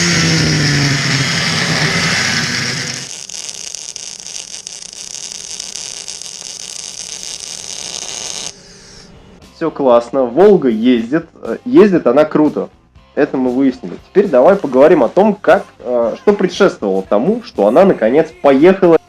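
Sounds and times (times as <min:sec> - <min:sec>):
car engine driving: 0:00.0 - 0:03.1.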